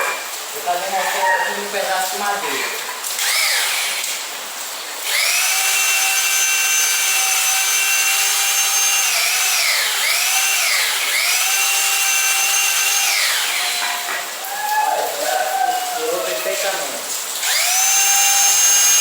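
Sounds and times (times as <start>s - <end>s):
drill drilling through wood: 3.1s - 4.4s, 5.0s - 14.3s, 17.4s - 19.0s.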